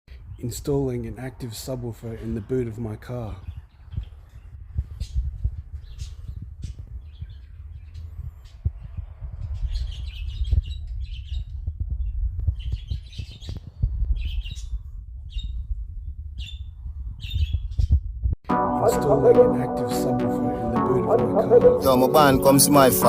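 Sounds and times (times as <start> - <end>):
birds chirping: 0.1 - 18.1
steady low rumble: 2.6 - 18.4.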